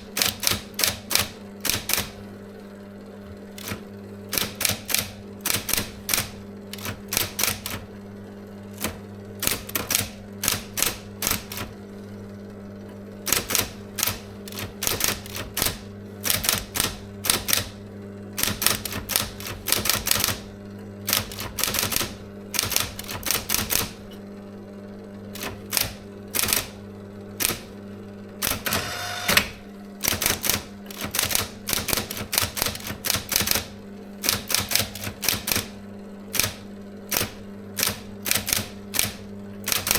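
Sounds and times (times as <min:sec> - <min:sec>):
typewriter key strikes: 0:00.1 - 0:02.2, 0:03.6 - 0:07.8, 0:08.8 - 0:11.7, 0:13.2 - 0:17.8, 0:18.4 - 0:20.4, 0:21.1 - 0:24.0, 0:25.4 - 0:26.8, 0:27.4 - 0:27.7, 0:28.4 - 0:35.7, 0:36.3 - 0:39.9.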